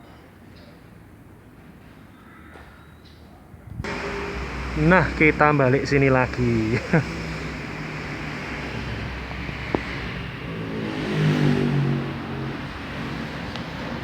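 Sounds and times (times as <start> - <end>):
vehicle engine running: 3.8 - 14.0.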